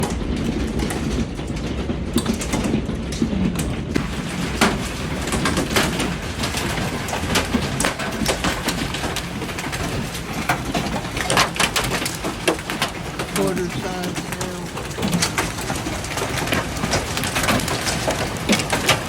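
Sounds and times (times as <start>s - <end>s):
hailstones clattering on house: 0.0s - 19.0s.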